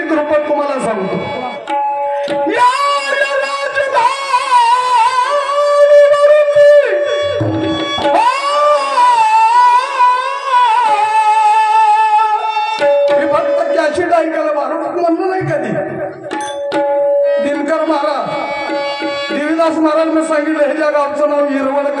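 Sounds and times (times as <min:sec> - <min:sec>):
person singing long held notes: 0:02.3 - 0:12.9.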